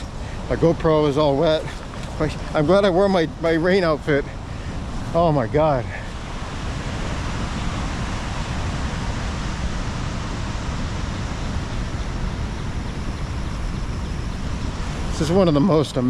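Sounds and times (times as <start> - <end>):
waterfall roaring: 0.0 - 16.0
wind buffeting microphone: 0.0 - 16.0.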